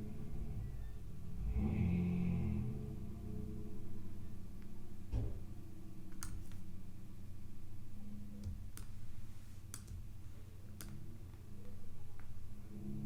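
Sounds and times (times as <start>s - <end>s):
low electrical hum: 0.0s - 13.0s
computer mouse clicks: 6.1s - 6.6s, 9.7s - 10.0s.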